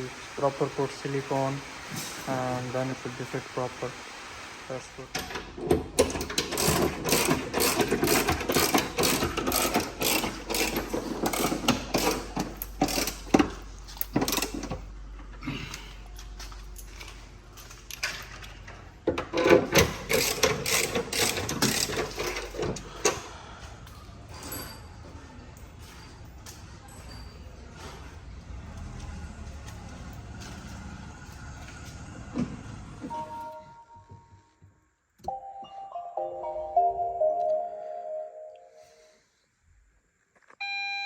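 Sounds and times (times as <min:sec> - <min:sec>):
metallic clicking and rattling of tools: 0:05.1 - 0:14.8, 0:16.2 - 0:23.3.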